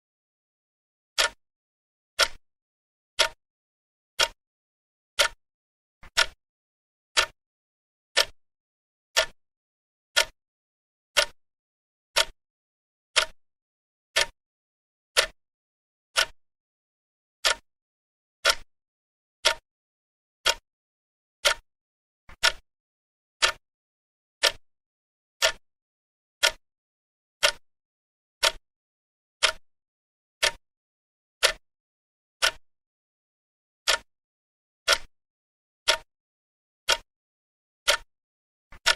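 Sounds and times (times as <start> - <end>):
clock ticking: 1.2 - 1.4, 2.2 - 2.4, 3.2 - 3.4, 4.2 - 4.4, 5.2 - 5.4, 6.0 - 6.4, 7.2 - 7.4, 8.2 - 8.4, 9.2 - 9.4, 10.2 - 10.4, 11.2 - 11.4, 12.2 - 12.4, 13.2 - 13.4, 14.2 - 14.4, 15.2 - 15.4, 16.2 - 16.4, 17.4 - 17.6, 18.4 - 18.7, 19.4 - 19.6, 20.4 - 20.6, 21.4 - 21.6, 22.3 - 22.6, 23.4 - 23.6, 24.4 - 24.6, 25.4 - 25.6, 26.4 - 26.6, 27.4 - 27.6, 28.4 - 28.6, 29.4 - 29.6, 30.4 - 30.6, 31.4 - 31.6, 32.4 - 32.6, 33.9 - 34.1, 34.9 - 35.1, 35.9 - 36.1, 36.9 - 37.1, 37.9 - 38.1.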